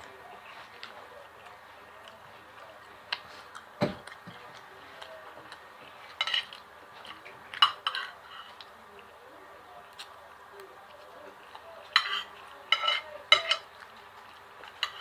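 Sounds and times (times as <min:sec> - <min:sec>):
dull thump: 0:03.8 - 0:04.1
cutlery clinking on a plate: 0:06.1 - 0:08.7, 0:11.8 - 0:13.9, 0:14.6 - 0:15.0.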